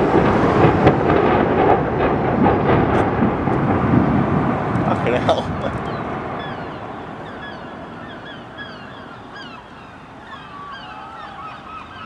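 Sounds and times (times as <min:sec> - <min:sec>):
low rumble of building collapse: 0:00.0 - 0:08.6
birds calling overhead: 0:03.0 - 0:12.0.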